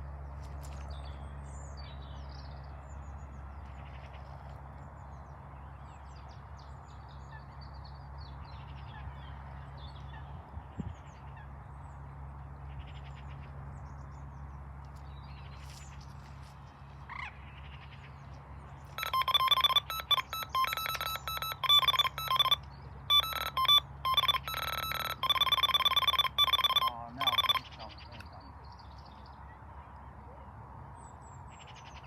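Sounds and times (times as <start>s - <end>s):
low steady rumble: 0.0s - 31.6s
electronic bite alarm toning: 19.0s - 28.1s.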